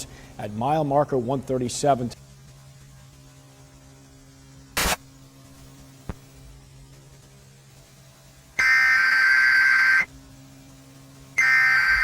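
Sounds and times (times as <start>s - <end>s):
low steady hum: 0.0s - 12.0s
loud burst of noise: 4.8s - 5.1s, 8.6s - 10.1s
alternating digital data tones: 8.6s - 10.1s, 11.4s - 12.0s.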